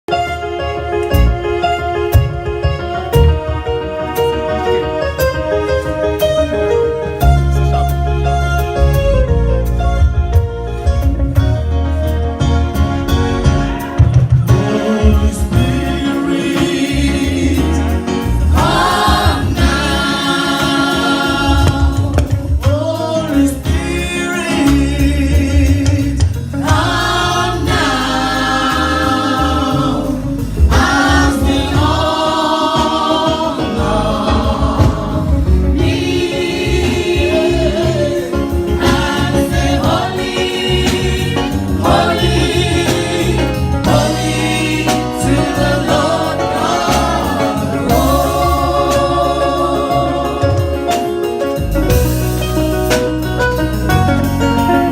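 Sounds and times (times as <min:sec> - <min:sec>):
instrumental backing: 0:00.1 - 0:54.9
bass line: 0:07.2 - 0:54.9
gospel choir singing: 0:13.4 - 0:52.5.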